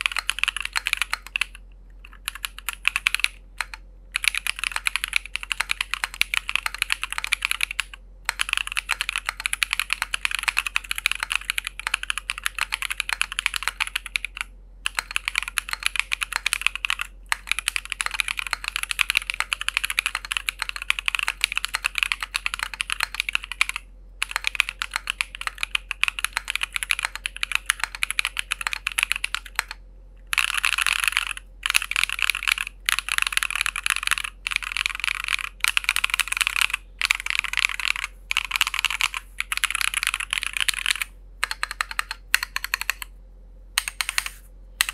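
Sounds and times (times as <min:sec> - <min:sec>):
mechanical keyboard typing: 0:00.0 - 0:43.1, 0:43.8 - 0:44.9.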